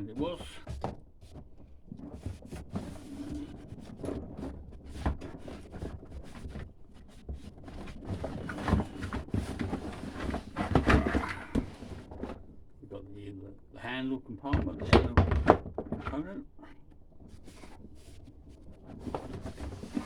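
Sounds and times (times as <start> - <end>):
parts clattering: 7.6 - 12.8.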